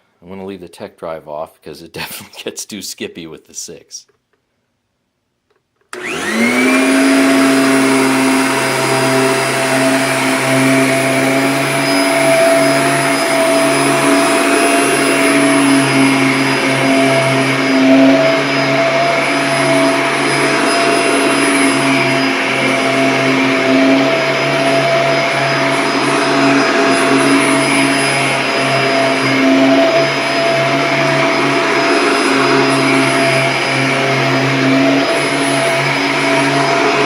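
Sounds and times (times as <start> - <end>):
vacuum cleaner motor whining: 5.9 - 37.0.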